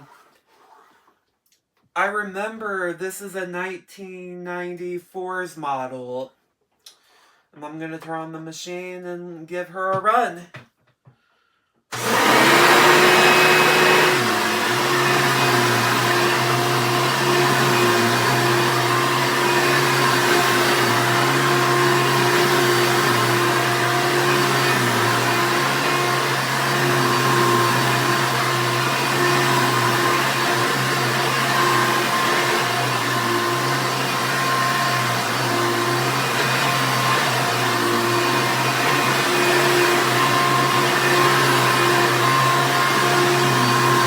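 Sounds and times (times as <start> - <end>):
vacuum cleaner motor whirring: 11.9 - 44.0.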